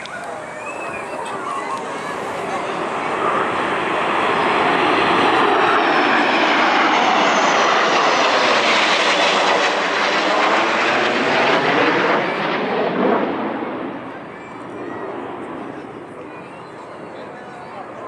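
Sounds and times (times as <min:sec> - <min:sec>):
jet aircraft roaring overhead: 0:00.0 - 0:18.0.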